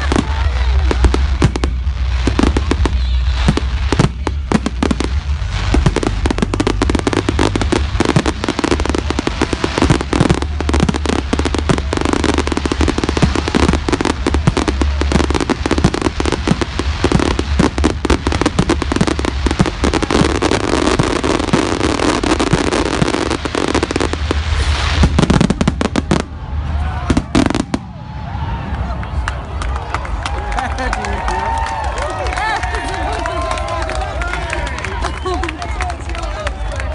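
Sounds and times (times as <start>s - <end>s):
fireworks bangs and crackles: 0.0s - 36.9s.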